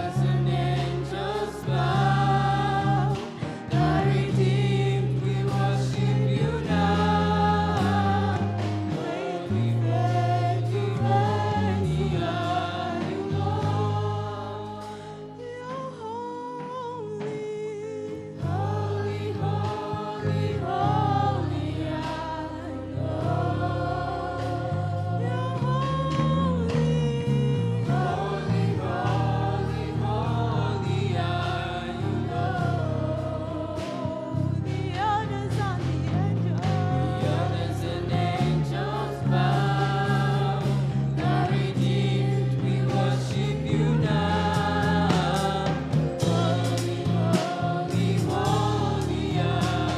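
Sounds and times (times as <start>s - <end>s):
instrumental accompaniment with bass: 0.0s - 49.9s
voices singing gospel song: 0.0s - 49.9s.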